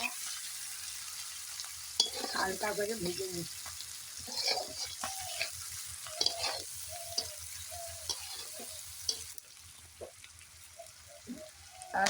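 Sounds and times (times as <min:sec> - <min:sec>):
onions sizzling in oil: 0:00.0 - 0:12.0
spoon scraping pan: 0:02.0 - 0:03.2, 0:04.2 - 0:09.4.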